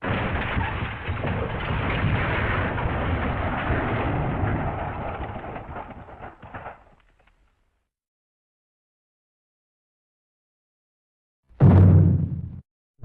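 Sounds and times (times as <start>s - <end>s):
dense crashing rumble: 0.0s - 6.8s, 11.6s - 12.6s.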